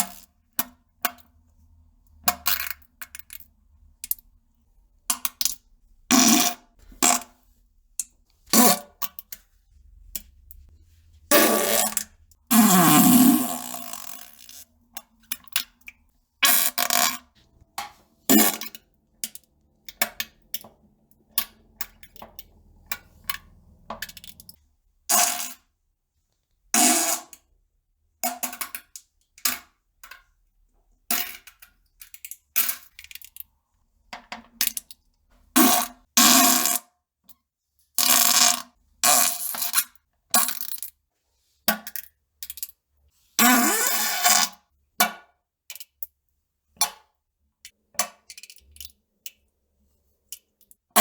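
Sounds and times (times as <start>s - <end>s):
farts: 11.3s - 14.1s.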